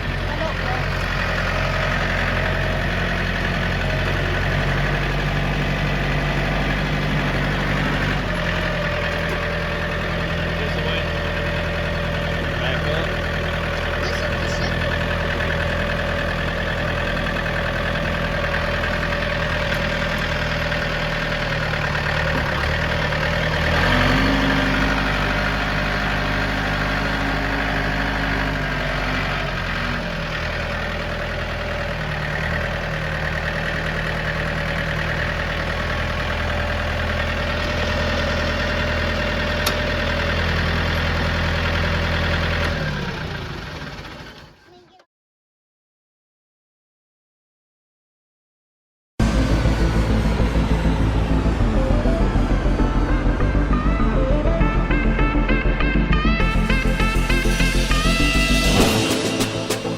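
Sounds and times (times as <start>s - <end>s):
engine running: 0.0s - 44.7s, 49.2s - 59.9s.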